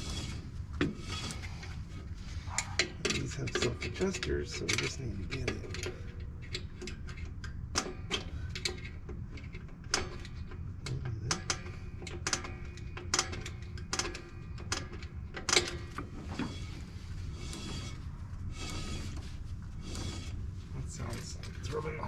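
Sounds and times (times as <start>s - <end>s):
rough scraping rustle: 16.1s - 21.8s.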